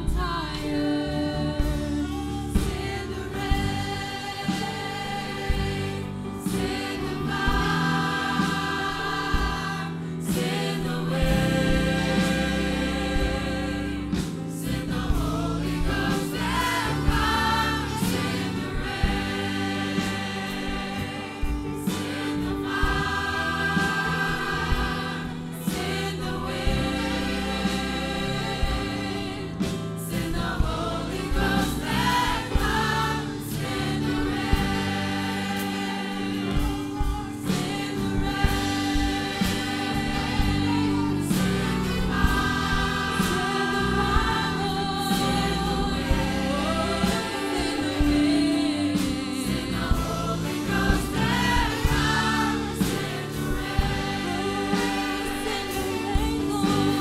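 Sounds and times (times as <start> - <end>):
congregation singing: 0.0 - 57.0
band playing: 1.6 - 57.0
drum hits: 14.1 - 49.1, 49.8 - 57.0.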